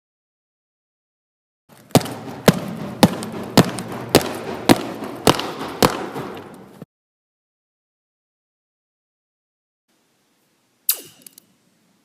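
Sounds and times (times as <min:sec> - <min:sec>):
sharp impacts: 0:01.8 - 0:06.8.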